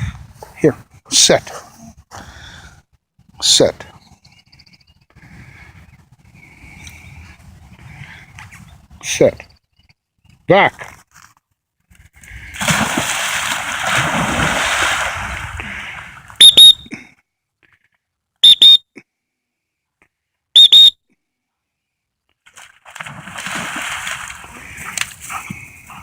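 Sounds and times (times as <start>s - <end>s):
dog splashing in water: 12.6s - 16.0s, 22.5s - 26.0s
dog-training whistle blasts: 16.4s - 16.9s, 18.4s - 18.8s, 20.6s - 21.0s.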